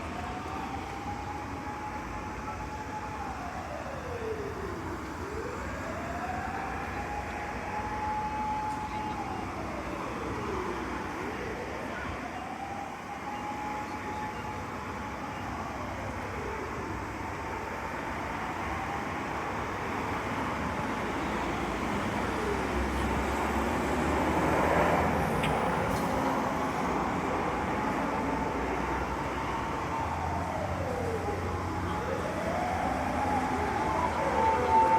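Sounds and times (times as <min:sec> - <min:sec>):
road traffic: 0:00.0 - 0:34.9
siren wailing: 0:00.1 - 0:17.0, 0:27.0 - 0:34.9.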